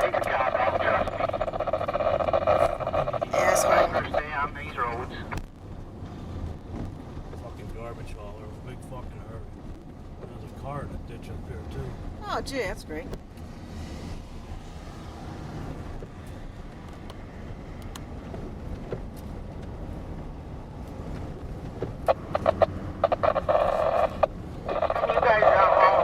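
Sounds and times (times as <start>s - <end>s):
crackly radio transmission: 0.0s - 5.4s, 22.0s - 26.0s
engine and road rumble: 0.0s - 26.0s.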